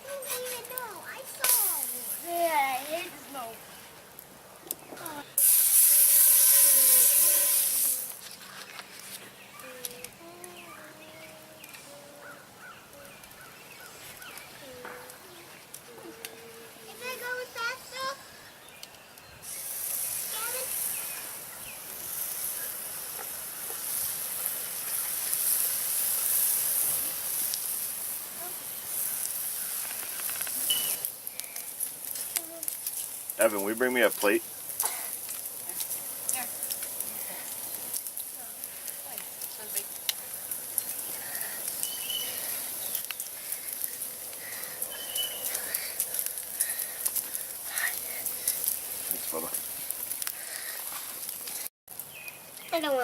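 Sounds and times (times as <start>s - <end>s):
food sizzling in a pan: 0.0s - 3.6s, 5.0s - 8.3s, 19.4s - 53.0s
campfire crackling: 0.0s - 53.0s
short bird chirps: 44.9s - 45.5s.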